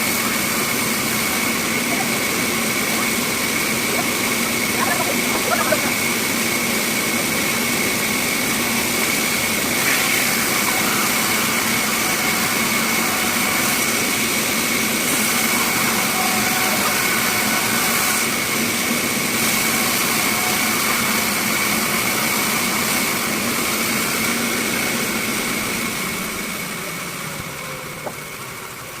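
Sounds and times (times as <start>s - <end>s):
bandsaw running with high whine: 0.0s - 29.0s.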